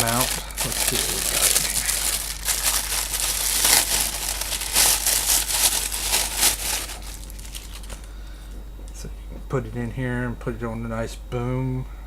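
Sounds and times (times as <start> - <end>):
plastic packaging crinkling: 0.0 - 8.2.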